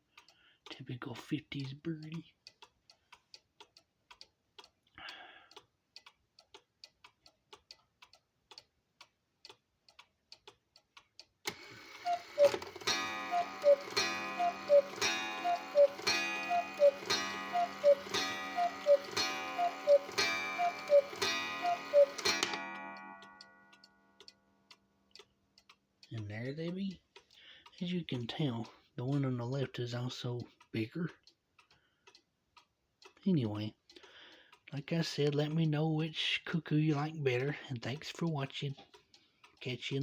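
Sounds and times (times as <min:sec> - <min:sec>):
clock ticking: 0:00.0 - 0:40.0
clock strike: 0:11.5 - 0:24.0
two-note cuckoo calls: 0:11.6 - 0:23.1.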